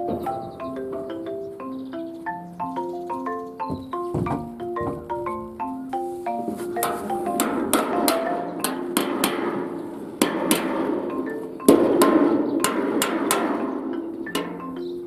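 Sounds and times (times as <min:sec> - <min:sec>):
light marimba background music: 0:00.0 - 0:15.0
hammer striking metal: 0:07.4 - 0:14.6.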